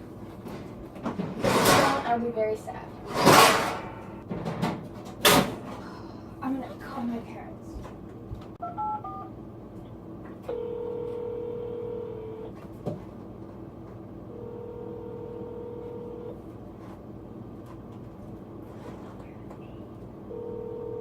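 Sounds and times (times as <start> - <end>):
telephone ringback tone: 8.6 - 9.3, 10.5 - 12.5, 14.3 - 16.3, 20.3 - 21.0.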